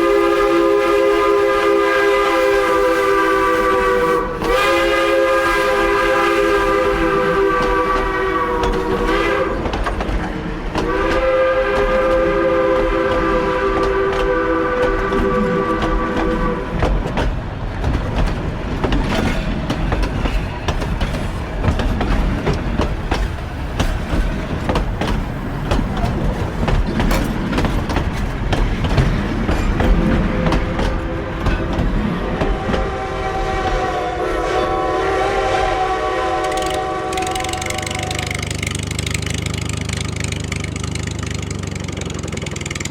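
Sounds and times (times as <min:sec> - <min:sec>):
multi-note train horn: 0:00.0 - 0:09.8, 0:10.8 - 0:16.9, 0:32.3 - 0:38.7
train wheels clattering: 0:00.0 - 0:42.9.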